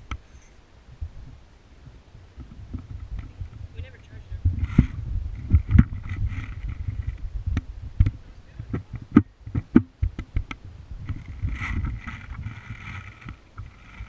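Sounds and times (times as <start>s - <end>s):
camera handling rumble: 4.4s - 14.0s
sharp clicks and knocks: 4.6s - 14.0s.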